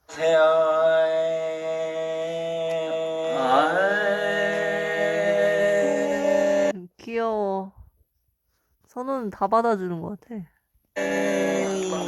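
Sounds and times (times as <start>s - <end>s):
person singing long note: 0.1s - 6.8s, 11.0s - 12.0s.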